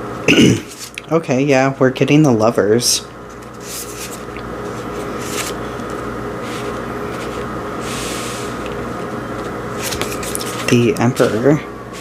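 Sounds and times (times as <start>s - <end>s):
steady low hum: 0.0s - 12.0s
cards sliding and rustling: 3.3s - 12.0s.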